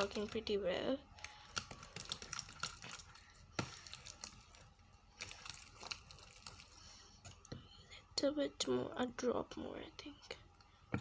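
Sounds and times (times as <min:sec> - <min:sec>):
slime clicking and crackling: 0:00.0 - 0:07.5.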